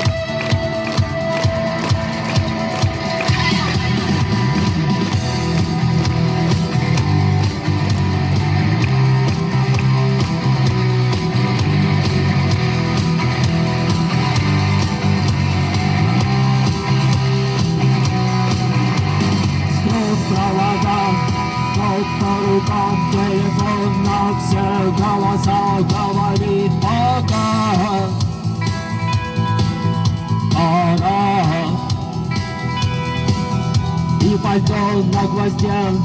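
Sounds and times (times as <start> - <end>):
steady drum beat: 0.0 - 28.8
bass line: 0.0 - 36.0
rock guitar: 0.0 - 36.0.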